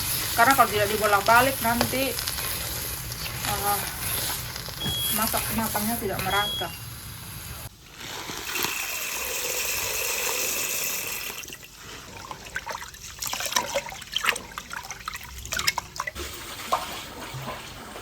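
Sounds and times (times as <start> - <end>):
splashing and knocks while rinsing: 11.8 - 18.0.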